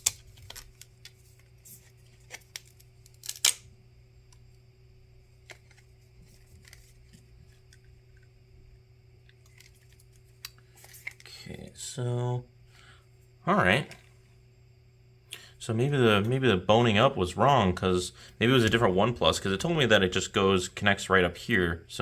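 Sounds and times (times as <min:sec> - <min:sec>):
low electrical hum: 0:00.0 - 0:22.0.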